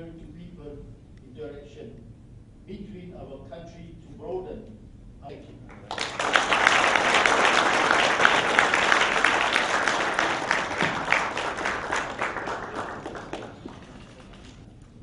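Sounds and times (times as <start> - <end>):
audience applauding: 5.7 - 14.6.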